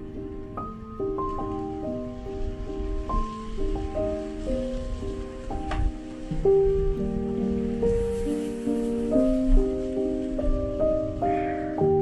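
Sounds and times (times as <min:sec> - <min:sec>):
gentle slow background music: 0:00.0 - 0:12.0.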